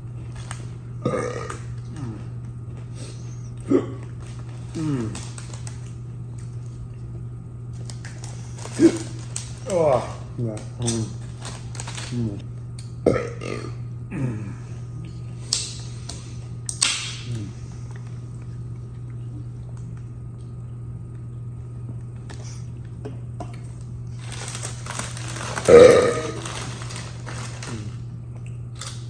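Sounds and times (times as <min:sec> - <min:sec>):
steady low hum: 0:00.0 - 0:29.0
man burping loudly: 0:01.0 - 0:02.1, 0:13.1 - 0:14.4, 0:25.7 - 0:26.5.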